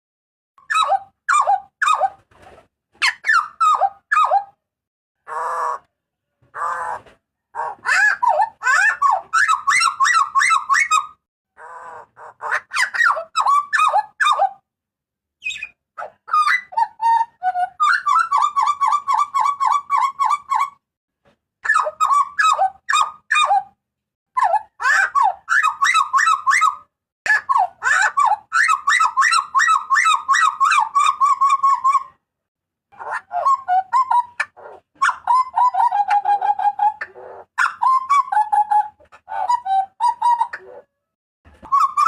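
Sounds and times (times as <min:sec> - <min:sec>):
harsh rasping bird calls: 0:06.5 - 0:14.5, 0:15.4 - 0:20.8.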